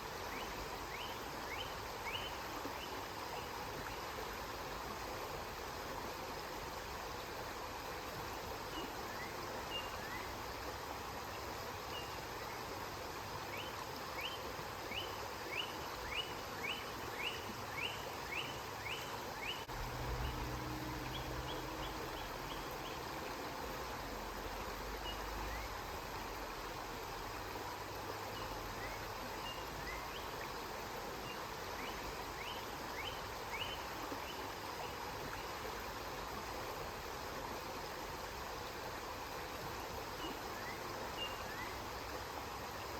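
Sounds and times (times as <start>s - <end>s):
river flowing: 0.0s - 42.9s
bird chirping: 15.0s - 23.0s
low rumble: 19.7s - 22.6s.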